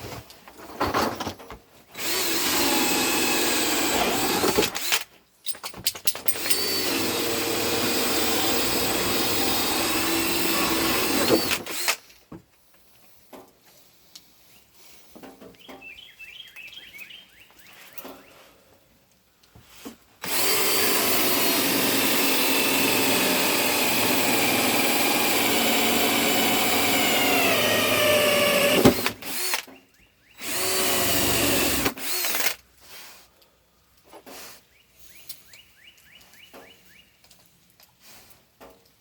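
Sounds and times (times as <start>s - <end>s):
power drill whining: 2.0s - 5.1s, 6.3s - 12.0s, 20.2s - 29.7s, 30.4s - 32.6s.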